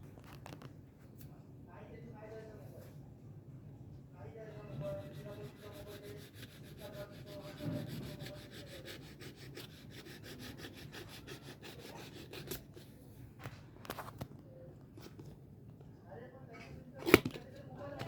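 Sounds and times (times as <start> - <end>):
knife sawing through cardboard: 4.6 - 12.9.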